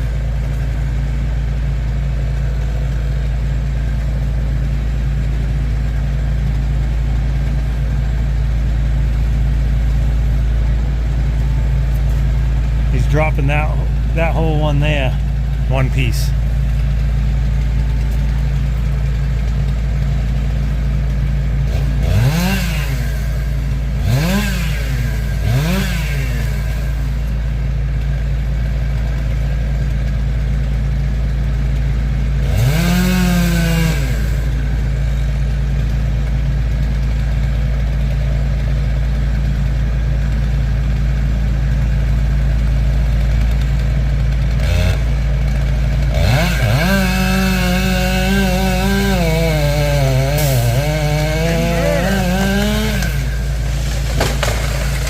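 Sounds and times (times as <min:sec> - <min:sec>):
engine idling: 0:00.0 - 0:55.0
chainsaw revving: 0:21.6 - 0:27.2, 0:32.4 - 0:34.6, 0:44.4 - 0:55.0.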